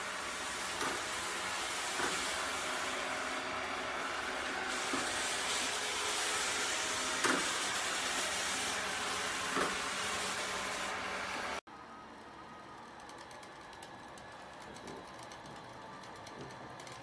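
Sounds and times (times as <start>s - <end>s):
robot vacuum cleaner hissing: 0.0s - 11.6s.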